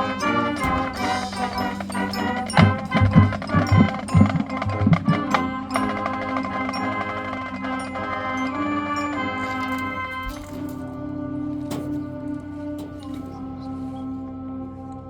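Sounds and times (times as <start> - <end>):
marching band playing: 0.1 - 9.2.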